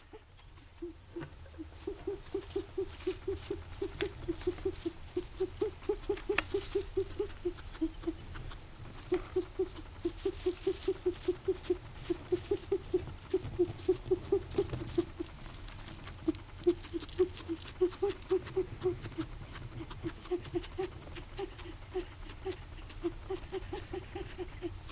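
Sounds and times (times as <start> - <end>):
guinea pig rapid pulsing noise: 0.0 - 24.9.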